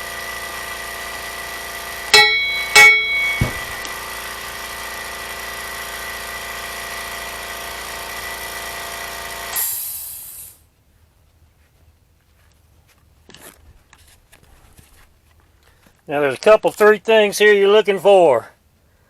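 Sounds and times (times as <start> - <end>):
machine hum: 1.2 - 5.0
hammer striking steel: 2.1 - 4.0
dull thud: 2.2 - 3.9
short hiss: 9.6 - 10.6.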